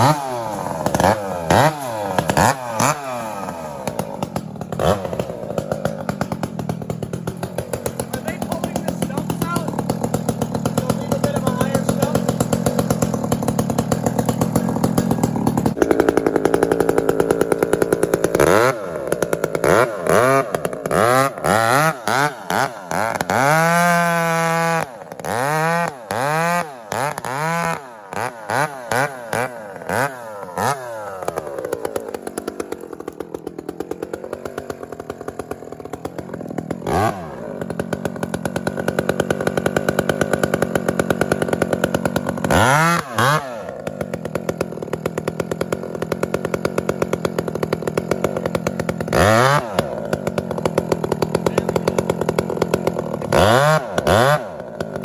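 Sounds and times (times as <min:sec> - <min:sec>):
chainsaw revving: 0:00.0 - 0:55.0.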